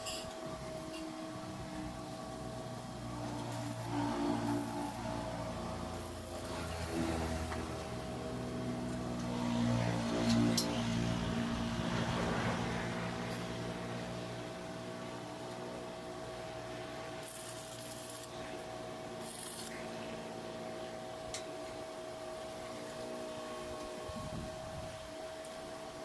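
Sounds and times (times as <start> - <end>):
welding machine hum: 0.0 - 26.0
arc welding hiss bursts: 3.3 - 5.3, 17.2 - 18.3, 19.2 - 19.8.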